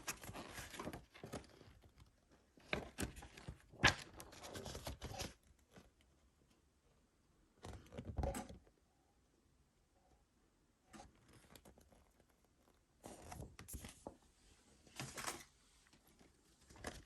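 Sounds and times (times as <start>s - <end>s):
packaging rustling and scraping: 13.1s - 14.2s.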